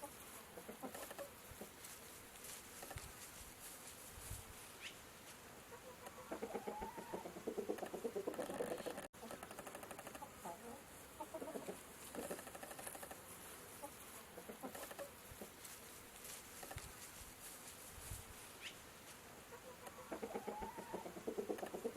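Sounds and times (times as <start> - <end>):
chicken clicks and scratches: 0.0 - 5.4, 6.0 - 19.2, 19.8 - 21.9
chicken chirp: 5.7 - 9.0, 19.5 - 21.9.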